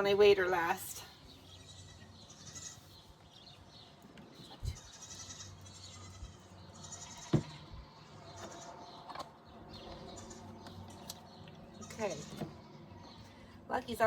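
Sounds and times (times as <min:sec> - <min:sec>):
goats bleating: 0:04.8 - 0:07.6
dull thumps: 0:07.3 - 0:07.6.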